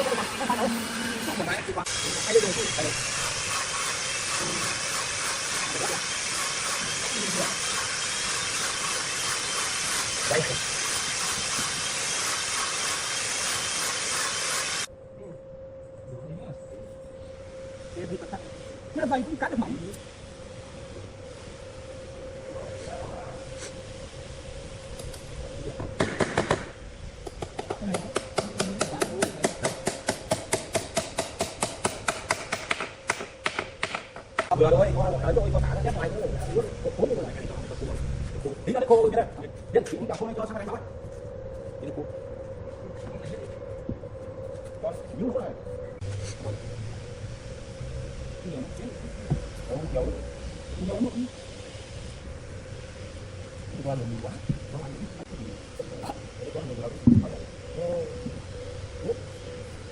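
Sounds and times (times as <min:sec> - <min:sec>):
steady hiss: 0:00.0 - 0:14.9, 0:17.1 - 0:59.9
tool tapping on wood: 0:26.0 - 0:34.5.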